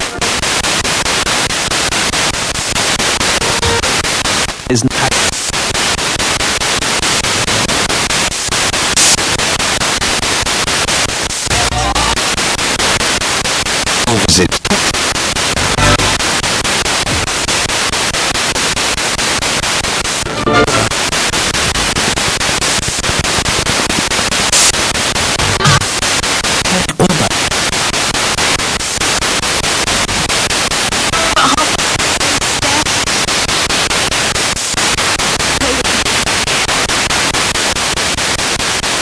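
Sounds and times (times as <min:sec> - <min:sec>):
radio static: 0:00.0 - 0:39.0
broadcast voice fragments: 0:03.3 - 0:05.6, 0:07.1 - 0:08.3, 0:08.9 - 0:09.4, 0:14.0 - 0:16.2, 0:26.6 - 0:27.6, 0:35.4 - 0:36.2.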